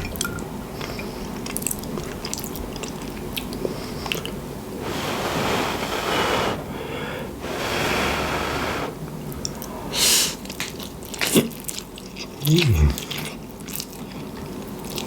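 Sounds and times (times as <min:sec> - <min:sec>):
person slurping spaghetti: 0:12.3 - 0:13.4.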